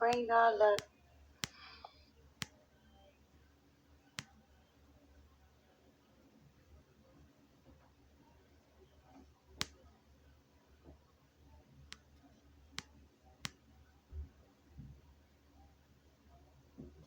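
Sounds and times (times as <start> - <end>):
faint low hum: 0.0 - 17.0
sharp clicks: 0.1 - 1.8.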